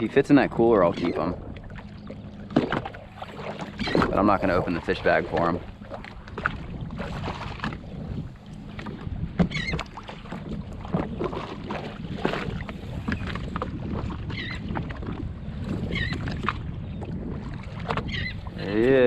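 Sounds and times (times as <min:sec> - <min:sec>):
watercraft engine idling: 0:00.0 - 0:13.4
water splashing: 0:00.0 - 0:15.3
wind buffeting microphone: 0:00.0 - 0:19.0.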